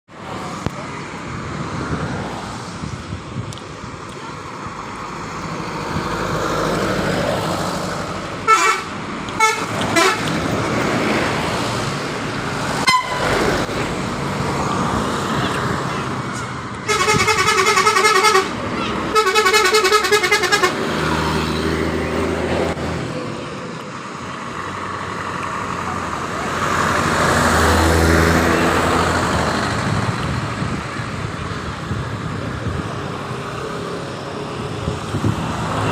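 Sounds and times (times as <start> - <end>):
bus diesel engine: 0.1 - 35.9
musical air horn toots: 8.5 - 10.3, 12.8 - 13.4, 16.8 - 20.8.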